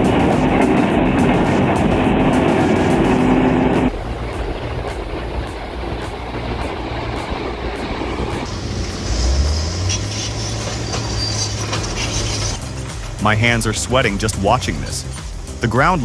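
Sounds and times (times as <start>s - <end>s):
low rumble of machinery: 0.0s - 13.2s
track clatter: 0.0s - 15.7s
tracked machine diesel engine: 0.0s - 16.0s.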